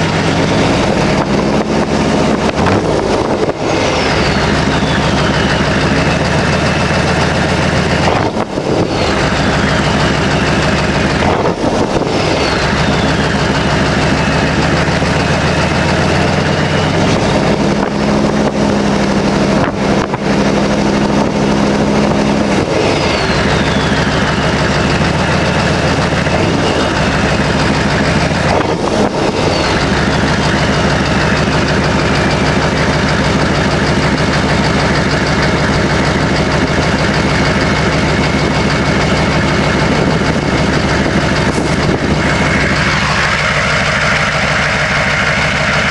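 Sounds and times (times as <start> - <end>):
diesel engine running: 0.0 - 45.9
turbo whistle gliding down: 21.9 - 24.8.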